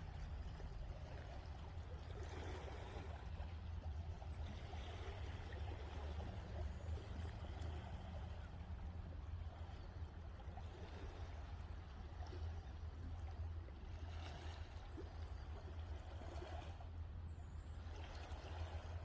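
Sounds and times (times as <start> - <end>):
small waves washing on beach: 0.0 - 19.0
steady low rumble: 0.0 - 19.0.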